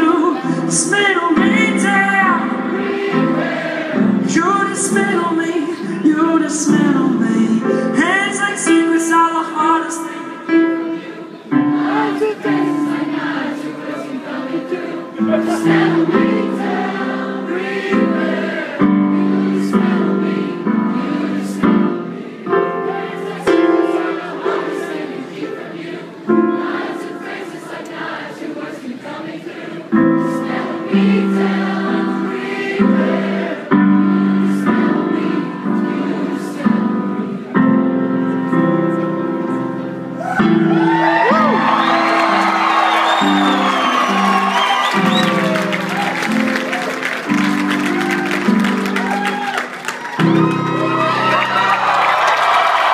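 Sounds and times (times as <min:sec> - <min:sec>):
solo piano chords: 0:00.0 - 0:29.2, 0:29.8 - 0:52.9
crowd cheering and whistling: 0:40.2 - 0:52.9.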